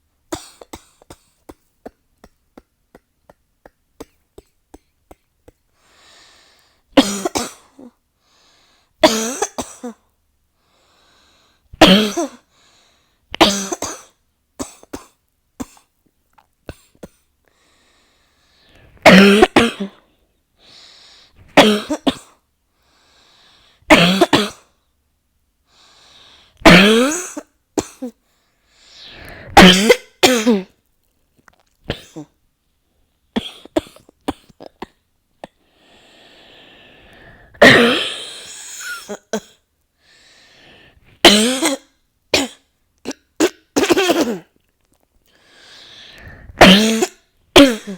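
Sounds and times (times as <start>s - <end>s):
faint breaths: 5.7s - 6.9s, 8.2s - 9.0s, 10.6s - 11.7s, 12.5s - 13.3s, 17.4s - 19.0s, 20.0s - 21.6s, 22.7s - 23.9s, 25.6s - 26.6s, 28.2s - 29.6s, 35.6s - 37.6s, 40.0s - 41.2s, 45.2s - 46.6s
person coughing: 7.0s - 8.0s, 9.0s - 10.0s, 11.8s - 12.4s, 13.4s - 15.9s, 19.0s - 20.1s, 21.6s - 22.4s, 23.9s - 24.7s, 26.6s - 28.2s, 29.5s - 30.8s, 31.9s - 32.4s, 33.4s - 35.6s, 37.6s - 39.6s, 41.2s - 44.6s, 46.3s - 47.9s.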